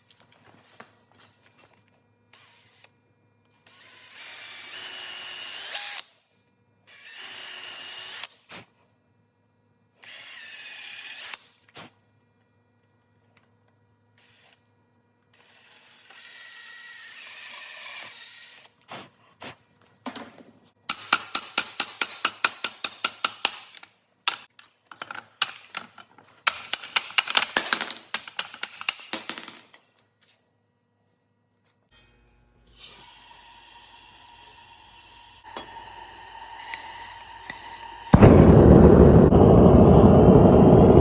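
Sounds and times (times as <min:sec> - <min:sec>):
tool whirring: 0:34.1 - 0:41.0.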